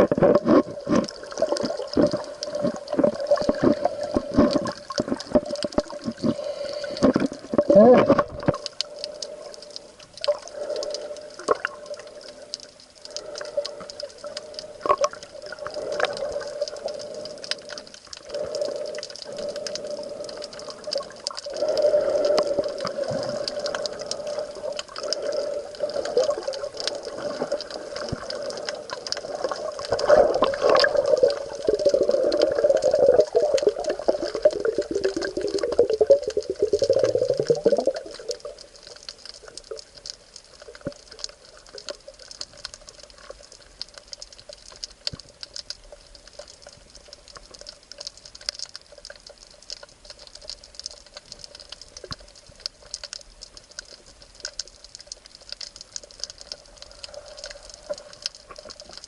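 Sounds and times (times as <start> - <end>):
sea water sloshing: 0.0 - 48.2
faint steady hiss: 0.0 - 59.0
small ticks: 0.0 - 59.0.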